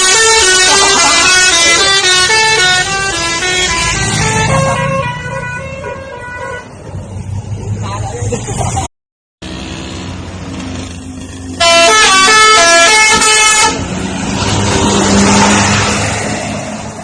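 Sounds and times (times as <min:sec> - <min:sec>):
low rumble of traffic: 0:00.0 - 0:17.0
large vehicle passing: 0:00.4 - 0:08.8, 0:12.6 - 0:17.0
musical air horn tune: 0:11.6 - 0:13.8.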